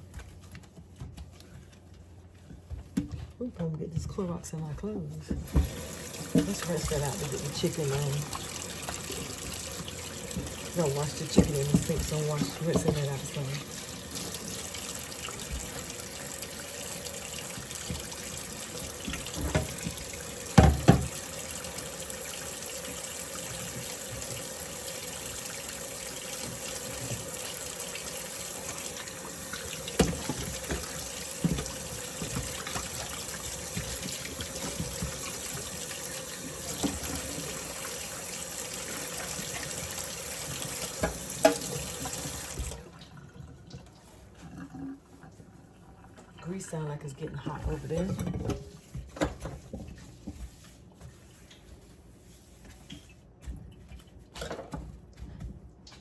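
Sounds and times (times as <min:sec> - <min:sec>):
knocks and clunks in sink: 0:04.0 - 0:16.0, 0:17.3 - 0:21.8, 0:28.6 - 0:37.8, 0:38.8 - 0:42.8, 0:47.4 - 0:50.5
tap water running into sink: 0:05.4 - 0:46.4.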